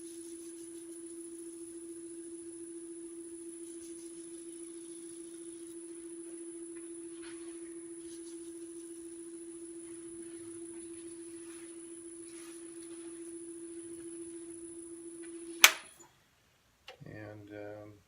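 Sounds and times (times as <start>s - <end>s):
faint rubbing sounds: 0.0s - 2.3s, 3.3s - 14.2s
lathe motor hum: 0.0s - 15.2s
sharp click: 15.6s - 16.1s.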